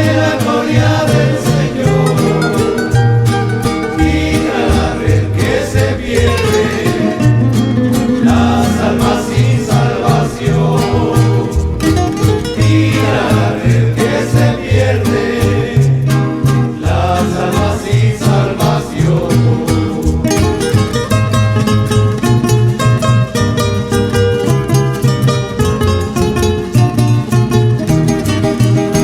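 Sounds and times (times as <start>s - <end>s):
voices singing together: 0.0s - 21.8s
bass line: 0.0s - 29.0s
strummed and plucked guitars: 0.0s - 29.0s.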